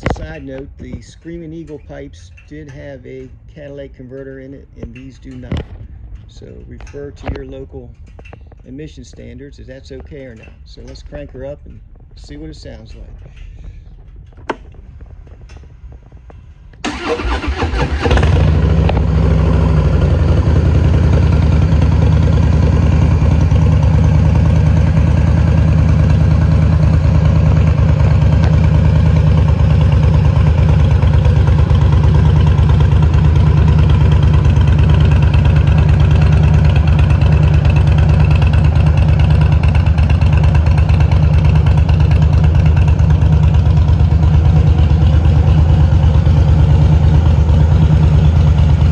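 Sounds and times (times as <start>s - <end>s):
motorcycle starter cranking: 12.5s - 48.9s
motorcycle engine idling: 13.2s - 48.9s.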